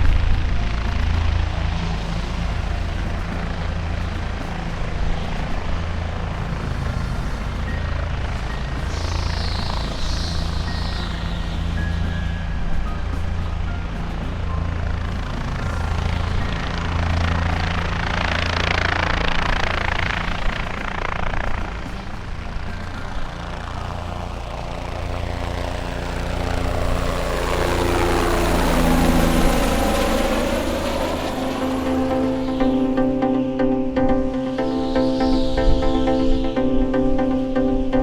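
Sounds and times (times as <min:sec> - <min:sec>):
helicopter rotor thrum: 0:00.0 - 0:38.0
sustained music tones: 0:00.0 - 0:38.0.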